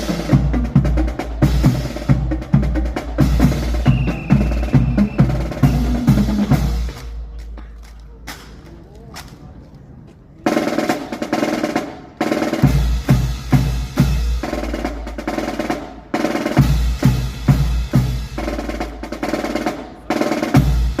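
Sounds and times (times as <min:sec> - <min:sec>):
drum-heavy music: 0:00.0 - 0:07.0.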